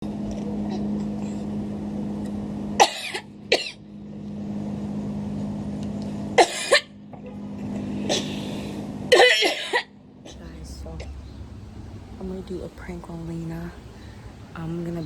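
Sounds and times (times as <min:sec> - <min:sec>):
steady low hum: 0:00.0 - 0:15.0
person coughing: 0:02.8 - 0:03.8, 0:06.4 - 0:06.9, 0:09.1 - 0:09.9.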